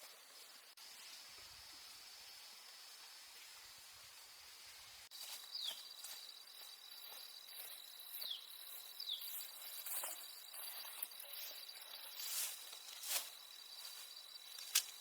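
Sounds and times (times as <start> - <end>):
insects droning: 0.0 - 15.0
light rustling clicks: 14.6 - 15.0.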